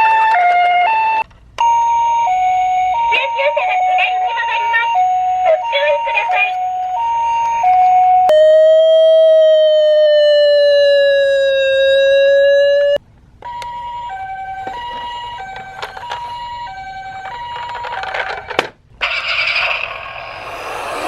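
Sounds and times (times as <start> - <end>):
two-tone hi-lo siren: 0.0 - 18.0, 19.0 - 21.0
toy siren wailing: 1.9 - 18.4, 19.0 - 21.0
hissing sound: 19.0 - 21.0.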